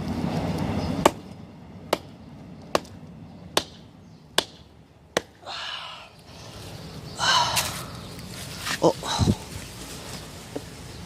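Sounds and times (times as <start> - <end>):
hatchet chopping log: 1.0 - 1.3, 1.9 - 5.4.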